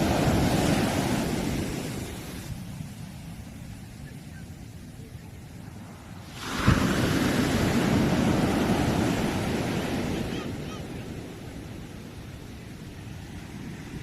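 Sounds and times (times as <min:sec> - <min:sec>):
sea wave crashing: 0:00.0 - 0:02.9, 0:06.1 - 0:14.0
surf hissing wash: 0:00.0 - 0:14.0.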